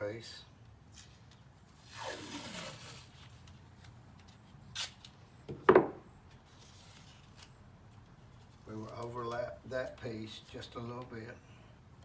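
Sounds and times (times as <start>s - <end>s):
adhesive tape pulled and torn: 0.9s - 5.2s.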